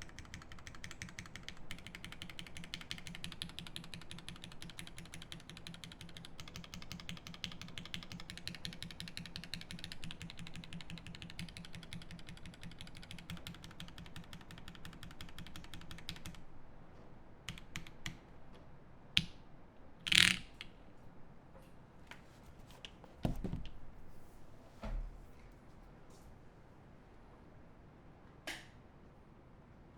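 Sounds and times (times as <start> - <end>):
typing on mechanical keyboard: 0.0 - 16.4, 17.5 - 18.2.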